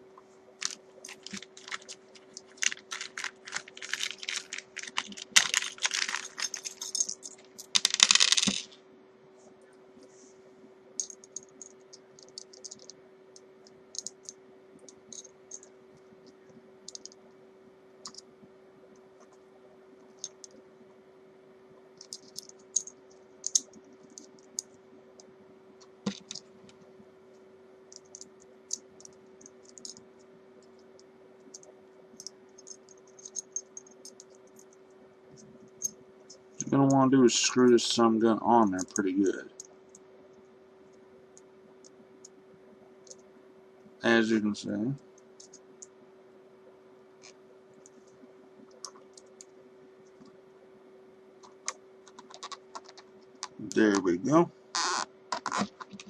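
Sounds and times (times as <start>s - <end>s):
steady low hum: 0.0s - 56.0s
small metal parts rattling: 0.6s - 8.7s, 11.0s - 12.9s, 32.2s - 34.7s.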